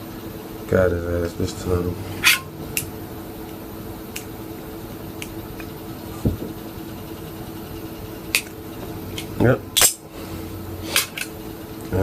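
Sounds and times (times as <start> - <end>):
steady low hum: 0.0 - 12.0
soft thump: 6.2 - 6.6.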